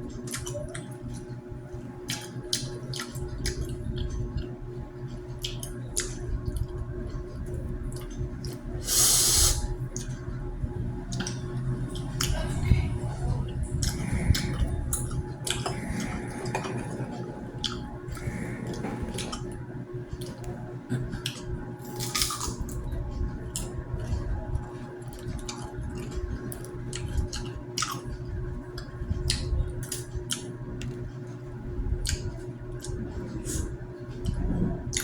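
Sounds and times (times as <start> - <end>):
steady hum: 0.0 - 35.0
chewing with clicks: 2.0 - 7.2, 17.6 - 19.6, 25.0 - 31.0, 32.0 - 33.1
short hissing bursts: 8.8 - 9.6.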